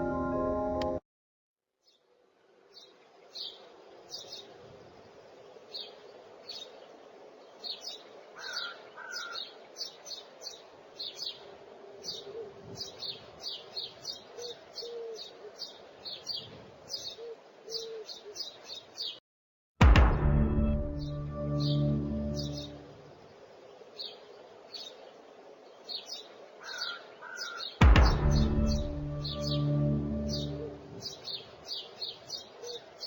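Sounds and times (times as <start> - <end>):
birds chirping: 2.6 - 19.2, 20.9 - 33.0
faint background hiss: 22.8 - 27.2.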